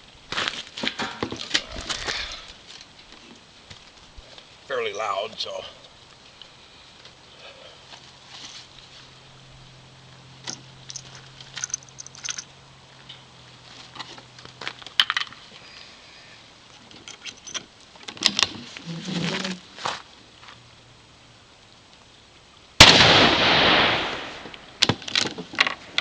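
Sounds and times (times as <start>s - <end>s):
light handling clicks and rattles: 10.4s - 13.3s, 16.7s - 18.6s.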